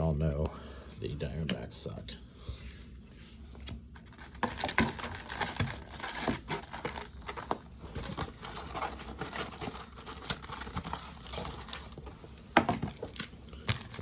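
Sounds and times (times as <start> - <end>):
card pack wrapper crinkling: 4.0 - 12.0.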